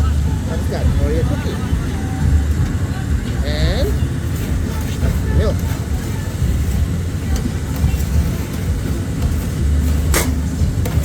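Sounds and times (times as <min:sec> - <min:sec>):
busy background haze: 0:00.0 - 0:11.0.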